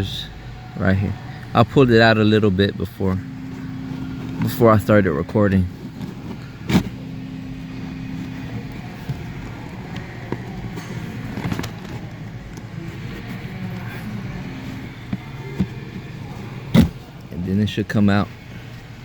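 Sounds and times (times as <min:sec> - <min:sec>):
low hum inside car: 0:00.0 - 0:18.8
plastic knocks and scrapes: 0:16.7 - 0:17.1.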